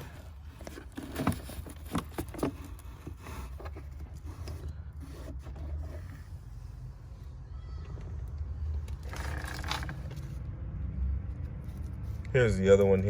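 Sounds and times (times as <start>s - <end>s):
hands scraping plastic housing: 0.0s - 6.4s
rustling: 0.0s - 6.8s.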